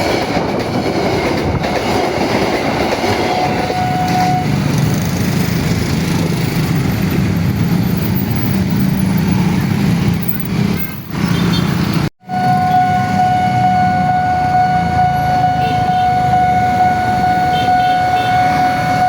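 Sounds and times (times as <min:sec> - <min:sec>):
train rumbling: 0:00.0 - 0:19.0
crossing alarm high tone: 0:03.0 - 0:04.9, 0:12.2 - 0:19.0.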